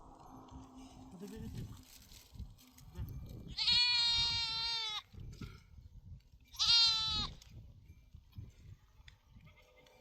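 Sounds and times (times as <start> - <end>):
young livestock bleating: 3.5 - 5.1, 6.5 - 7.4.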